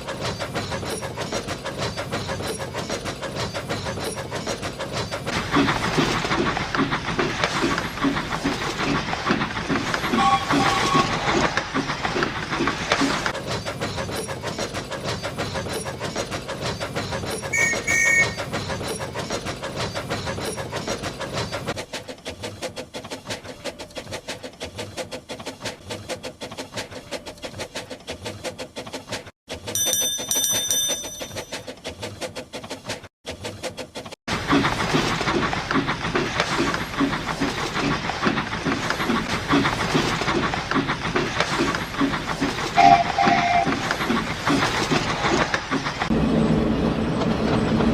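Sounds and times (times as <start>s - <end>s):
steam locomotive chuffing: 0.0s - 47.9s
two-tone steam whistle: 17.5s - 18.5s, 42.8s - 43.9s
ringing bell: 29.8s - 31.6s.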